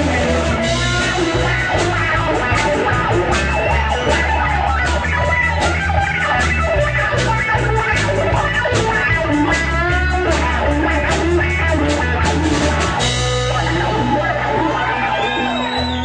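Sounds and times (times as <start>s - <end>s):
bass line: 0.0s - 16.0s
drums: 0.0s - 16.0s
electric guitar bending notes: 0.0s - 16.0s.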